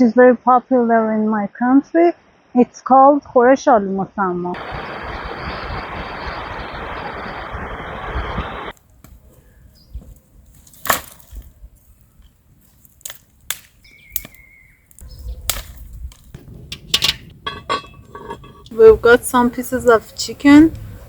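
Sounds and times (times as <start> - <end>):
steady rushing noise: 4.6 - 8.7
wood snapping: 10.6 - 11.6, 12.2 - 17.4.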